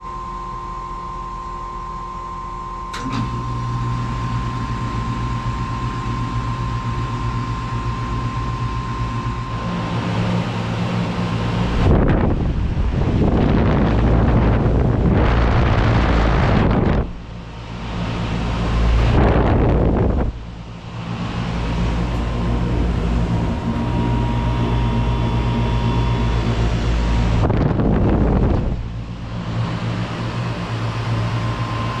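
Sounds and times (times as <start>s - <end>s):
faint steady whine: 0.0s - 32.0s
heat pump hum: 0.0s - 32.0s
wind gusts on microphone: 11.0s - 20.6s, 21.2s - 32.0s.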